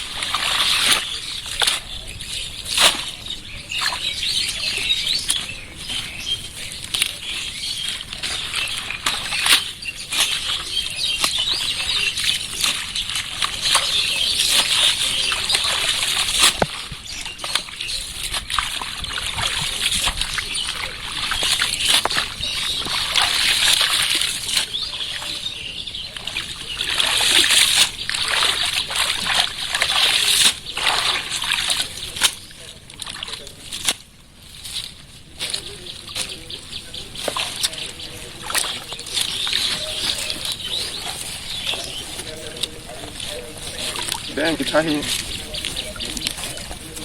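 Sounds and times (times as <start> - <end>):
water splashing and sloshing: 0.0 - 47.0.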